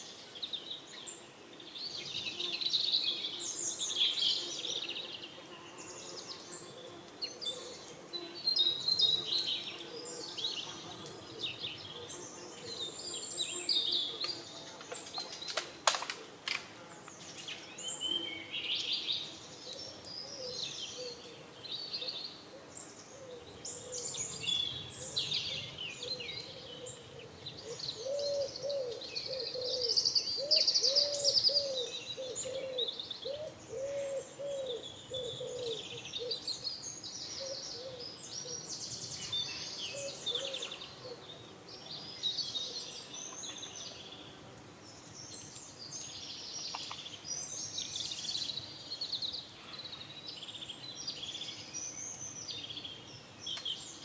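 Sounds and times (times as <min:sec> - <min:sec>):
songbirds chirping and trilling: 0:00.0 - 0:54.0
pigeon cooing: 0:27.6 - 0:36.4.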